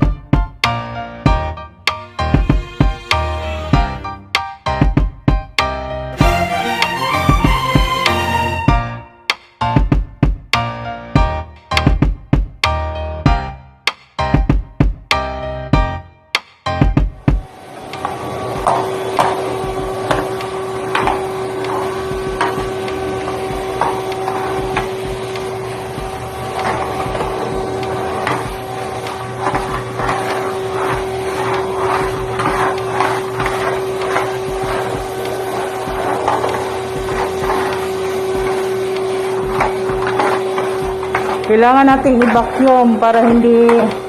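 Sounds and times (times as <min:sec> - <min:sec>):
motor hum: 0:01.9 - 0:04.1, 0:17.2 - 0:44.0
knocks and clatter: 0:17.3 - 0:44.0.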